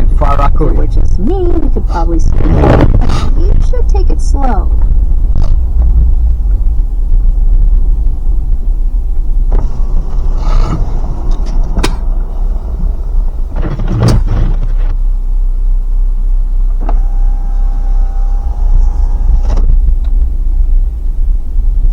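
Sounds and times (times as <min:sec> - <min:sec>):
car driving through snow: 0:04.4 - 0:15.2.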